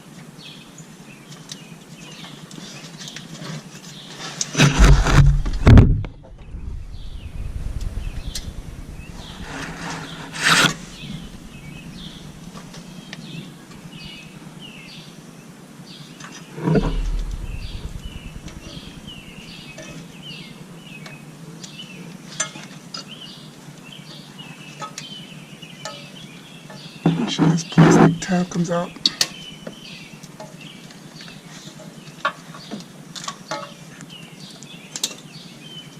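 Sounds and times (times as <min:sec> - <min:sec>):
rustling knock: 0:04.6 - 0:12.8, 0:16.8 - 0:19.5
steady low hum: 0:04.6 - 0:14.7, 0:16.7 - 0:20.8
birds chirping: 0:04.8 - 0:15.1, 0:16.8 - 0:20.9.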